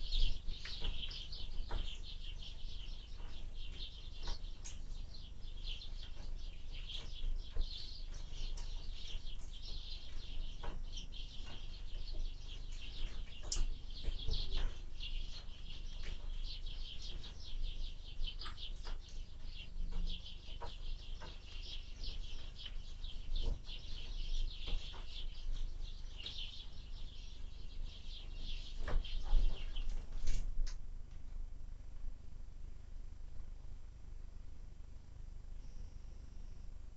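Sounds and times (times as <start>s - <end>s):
small birds chirping: 0.0s - 30.8s.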